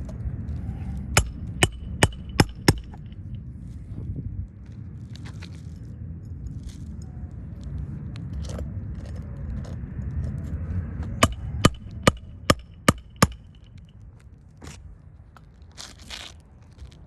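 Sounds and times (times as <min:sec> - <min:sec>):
steady low rumble: 0:00.0 - 0:17.0
hammer striking metal: 0:01.2 - 0:03.2, 0:11.2 - 0:13.7.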